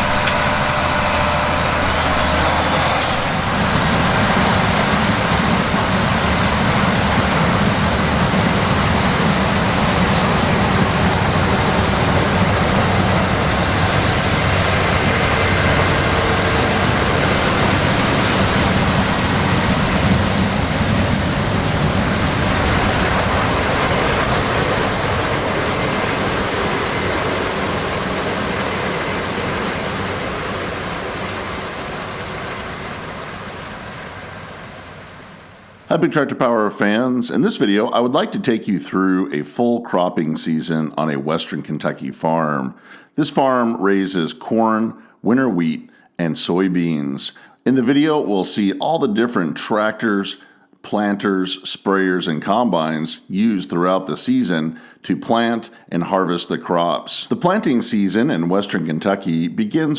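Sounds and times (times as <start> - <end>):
farm machine running: 0.0 - 37.8.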